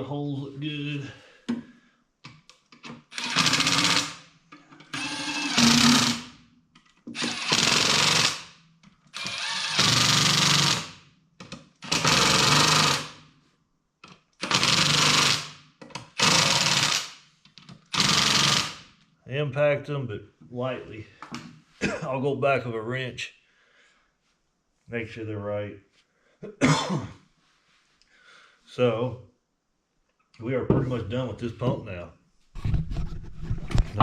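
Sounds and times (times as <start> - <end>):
impact wrench bursts: 3.1 - 4.3, 4.9 - 6.4, 7.1 - 11.0, 11.8 - 13.2, 14.4 - 17.2, 17.9 - 18.9.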